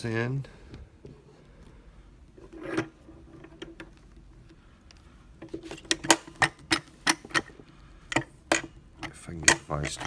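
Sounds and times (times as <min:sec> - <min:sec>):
metal clicks and knocks: 0:05.4 - 0:10.0.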